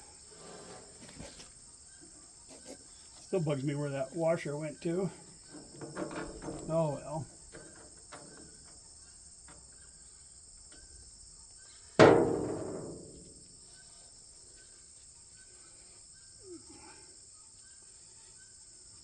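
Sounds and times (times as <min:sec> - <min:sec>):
insects buzzing and chirping: 0:00.0 - 0:19.0
metal clang: 0:12.0 - 0:13.3.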